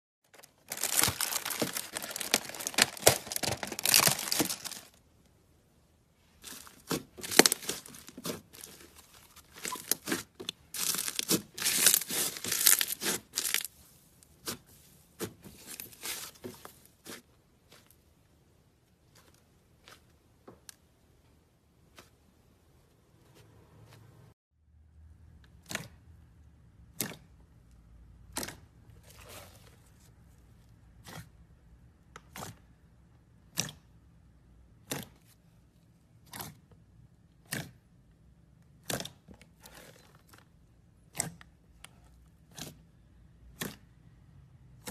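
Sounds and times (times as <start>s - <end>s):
slime crackling and popping: 6.5s - 13.7s.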